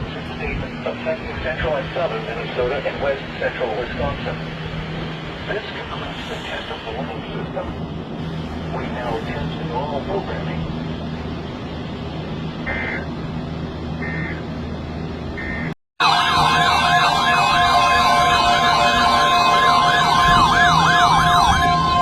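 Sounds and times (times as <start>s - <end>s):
warbling siren alerts: 12.6s - 13.1s, 14.0s - 14.5s, 15.4s - 22.0s
steady alarm tone: 15.4s - 22.0s.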